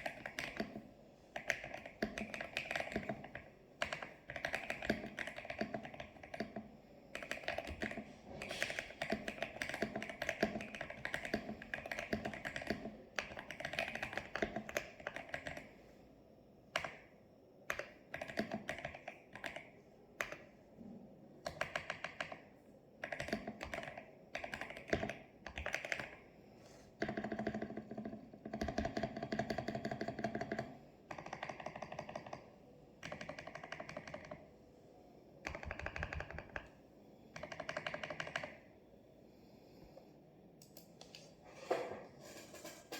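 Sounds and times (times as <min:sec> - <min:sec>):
mechanical keyboard typing: 0:00.0 - 0:15.7, 0:16.8 - 0:17.0, 0:17.6 - 0:20.6, 0:21.4 - 0:22.4, 0:23.0 - 0:26.3, 0:27.0 - 0:34.5, 0:35.4 - 0:36.8, 0:37.4 - 0:38.7.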